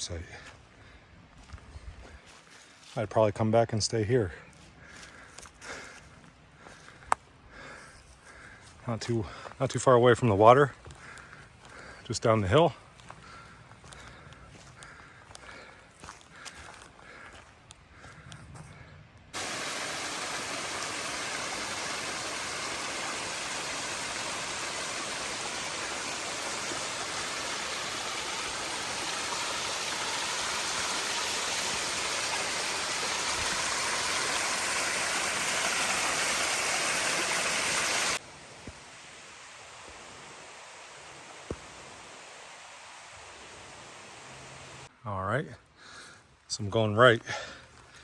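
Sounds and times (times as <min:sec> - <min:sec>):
faint footsteps: 0:01.3 - 0:03.1, 0:12.9 - 0:18.7
creek water rushing: 0:19.4 - 0:44.9
faint hiss: 0:19.4 - 0:44.9.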